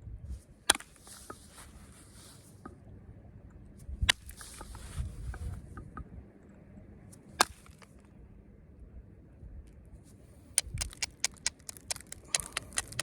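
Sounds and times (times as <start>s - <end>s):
knapping tools clicking on stone: 10.6s - 13.0s.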